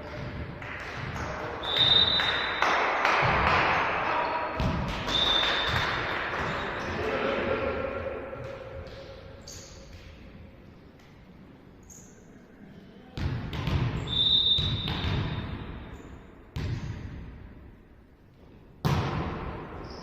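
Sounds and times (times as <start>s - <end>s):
players' voices: 0.0s - 10.1s
volleyball being struck and bouncing: 13.2s - 14.0s, 18.8s - 19.8s.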